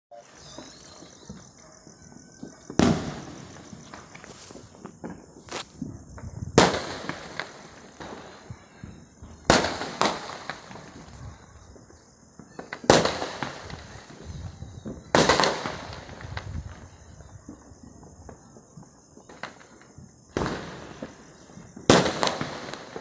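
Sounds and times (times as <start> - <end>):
firecracker bangs: 2.4 - 8.8, 9.4 - 11.2, 21.9 - 23.0.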